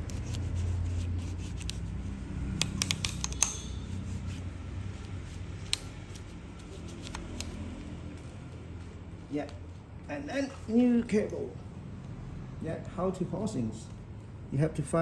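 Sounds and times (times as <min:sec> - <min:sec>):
metallic clicks of tools: 0:02.5 - 0:04.0.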